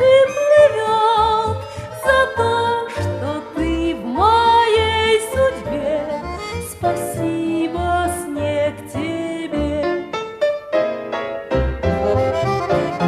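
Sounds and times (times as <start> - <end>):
pulsing bass: 0.0 - 10.0, 11.6 - 13.0
song with singing voice: 0.0 - 10.1.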